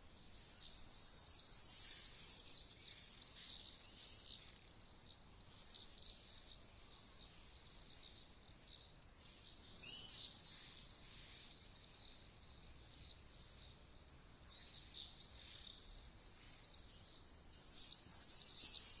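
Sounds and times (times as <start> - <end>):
swallows twittering: 5.5 - 19.0.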